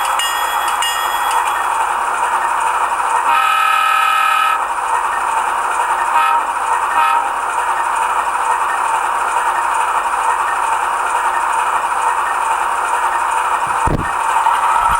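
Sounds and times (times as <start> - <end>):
diesel engine hum: 1.1 - 14.9
locomotive horn: 3.2 - 4.6, 6.1 - 7.4.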